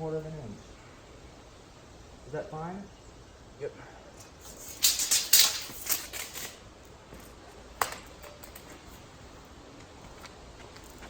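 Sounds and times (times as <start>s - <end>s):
faint steady hiss: 0.0s - 11.0s.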